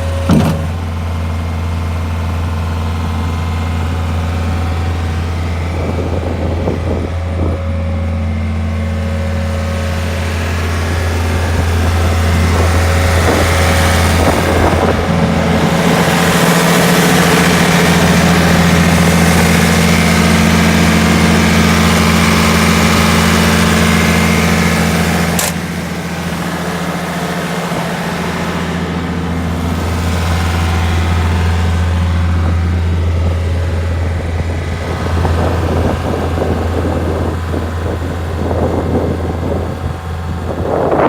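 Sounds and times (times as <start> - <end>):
skid steer engine running: 0.0 - 41.0
sharp click: 25.4 - 25.6.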